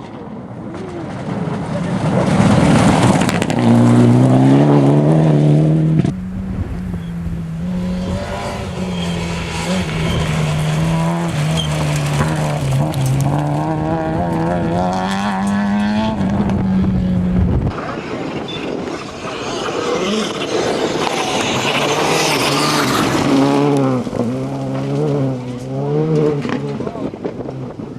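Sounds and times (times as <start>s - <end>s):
rally car accelerating hard: 0.3s - 27.9s
car engine at high revs: 1.5s - 27.9s.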